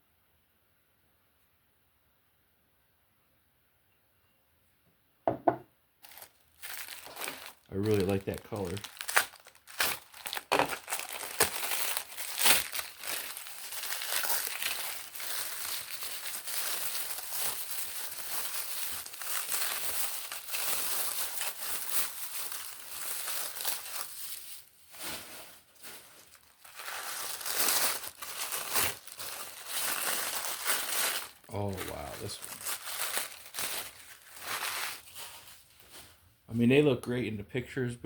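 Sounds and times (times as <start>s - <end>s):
packing material crinkling: 6.0s - 36.2s.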